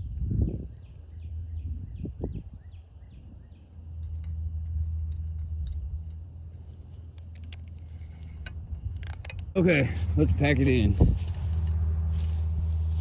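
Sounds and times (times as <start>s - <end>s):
low rumble: 0.0s - 13.0s
light clicks and rattles: 4.0s - 11.8s.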